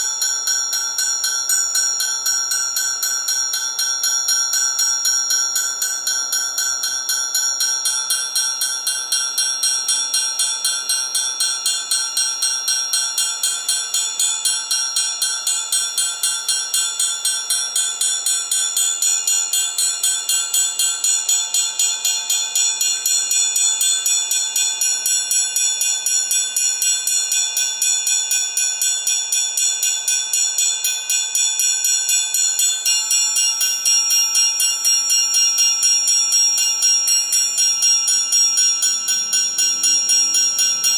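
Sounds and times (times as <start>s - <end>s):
triangle tremolo: 37.4s - 40.9s.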